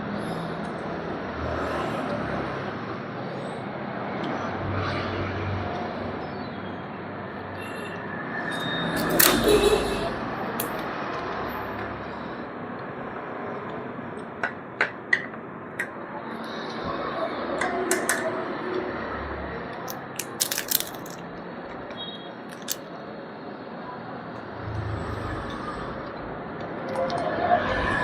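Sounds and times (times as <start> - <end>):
steady background hum: 8.9 - 18.6, 19.4 - 27.1.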